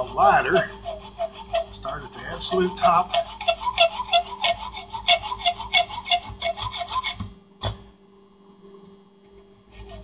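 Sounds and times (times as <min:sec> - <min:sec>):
file scraping on metal: 0:00.0 - 0:07.3, 0:09.7 - 0:10.0.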